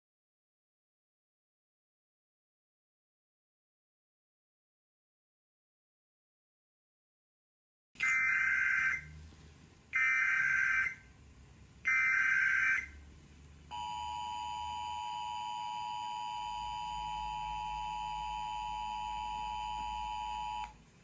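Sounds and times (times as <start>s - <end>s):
harsh two-tone attention signal: 13.7s - 20.7s.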